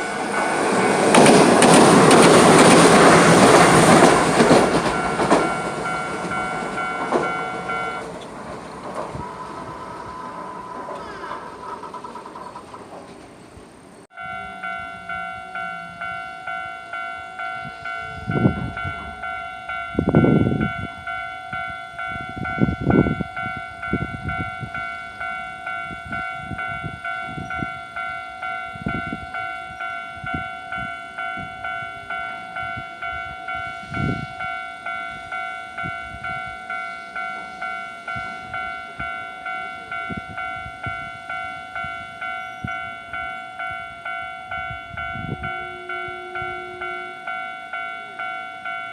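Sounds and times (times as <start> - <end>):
tram wheels thudding over rail joints: 0.0 - 14.0
level crossing bell ringing: 4.6 - 8.2, 14.1 - 48.9.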